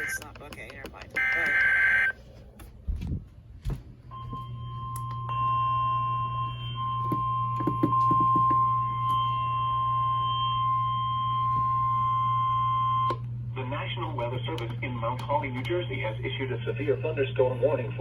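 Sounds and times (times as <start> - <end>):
steady alarm tone: 1.2 - 2.2, 4.1 - 13.1
low hum: 1.2 - 18.0.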